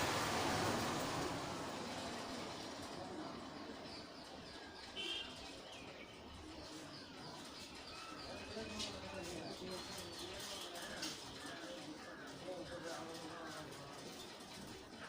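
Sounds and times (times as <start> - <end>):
rushing noise: 0.0 - 3.0
birds chirping: 1.7 - 15.0.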